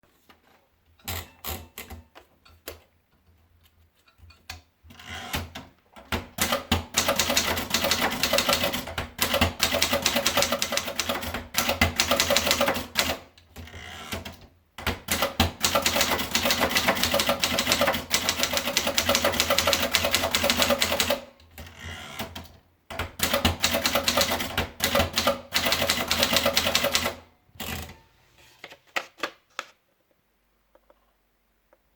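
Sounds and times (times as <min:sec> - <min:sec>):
typewriter keystrikes: 0:05.4 - 0:13.3, 0:14.2 - 0:21.3, 0:22.2 - 0:28.0.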